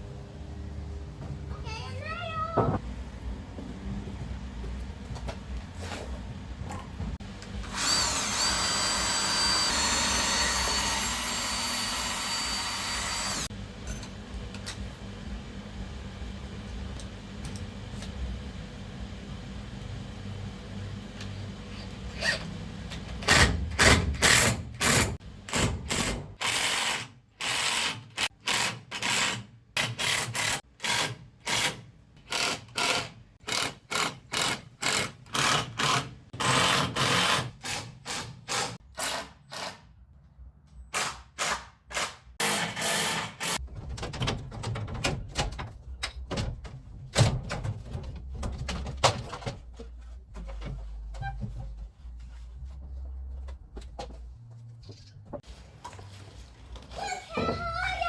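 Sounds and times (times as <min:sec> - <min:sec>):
power tool bursts: 0:07.6 - 0:13.5.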